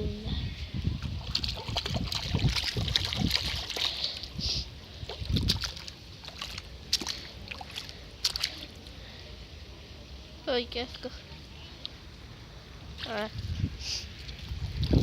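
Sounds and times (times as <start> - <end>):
water splashing and sloshing: 0.8 - 9.3, 11.8 - 15.0.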